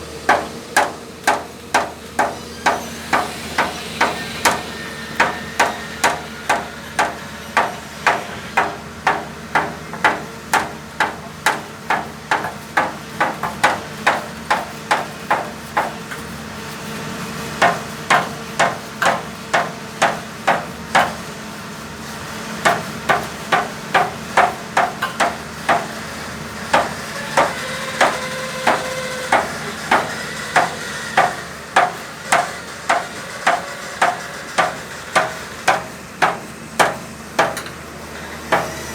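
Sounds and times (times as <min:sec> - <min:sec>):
hammer blows: 0:26.7 - 0:37.7.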